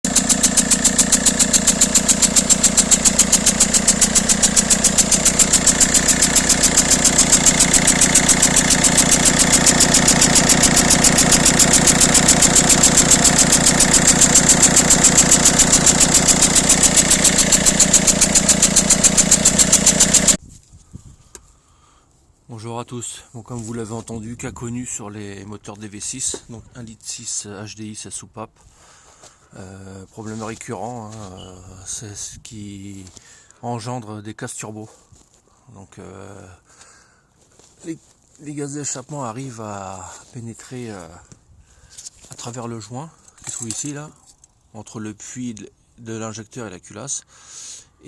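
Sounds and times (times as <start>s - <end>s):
diesel engine idling with puffing: 0.0s - 20.4s.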